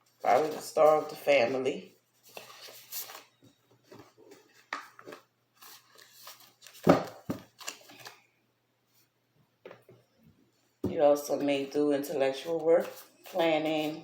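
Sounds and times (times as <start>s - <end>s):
cards rustling and snapping: 4.6s - 8.2s.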